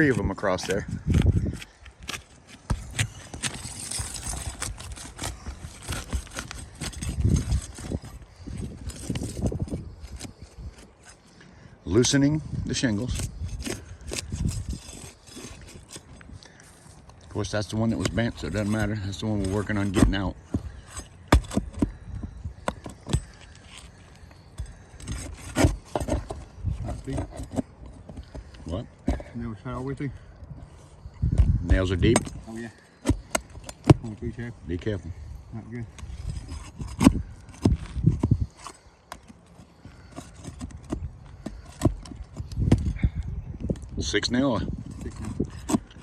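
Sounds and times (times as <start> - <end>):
tool knocking prying shingles: 0.0 - 10.8, 17.9 - 23.8, 32.0 - 34.1
knocks and scrapes on shingle roof: 0.0 - 11.4, 12.8 - 30.3, 31.3 - 46.0.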